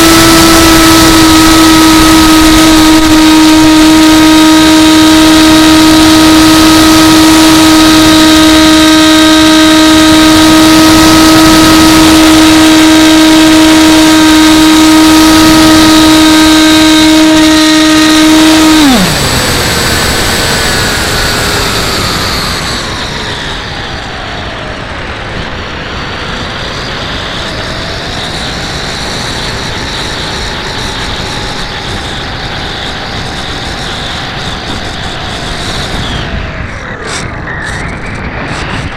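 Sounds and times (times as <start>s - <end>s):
model plane motor whining: 0.0s - 38.9s
wind rushing: 35.5s - 38.9s.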